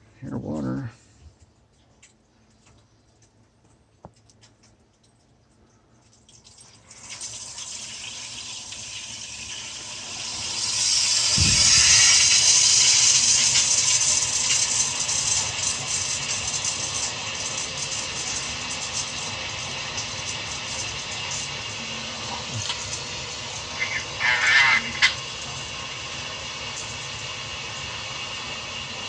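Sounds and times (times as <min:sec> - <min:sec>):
water rushing through plumbing: 0:06.2 - 0:29.0
brief low thud: 0:11.4 - 0:12.1.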